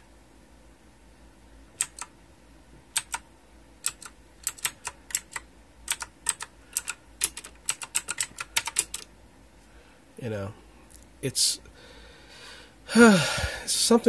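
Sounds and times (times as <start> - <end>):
clicky mechanical keyboard typing: 1.8 - 2.1, 2.9 - 3.2, 3.8 - 9.1.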